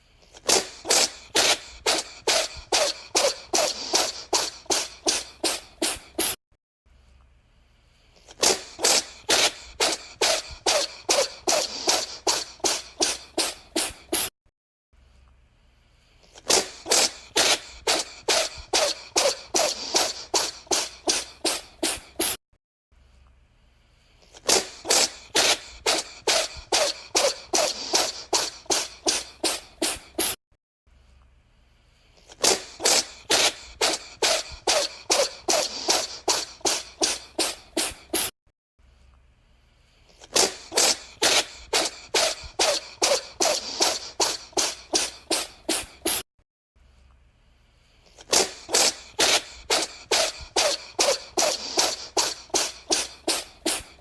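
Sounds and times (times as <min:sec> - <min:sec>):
cat sneezing: 0:00.3 - 0:06.4, 0:08.2 - 0:14.3, 0:16.3 - 0:22.4, 0:24.2 - 0:30.4, 0:32.2 - 0:38.4, 0:40.1 - 0:46.3, 0:48.1 - 0:54.0.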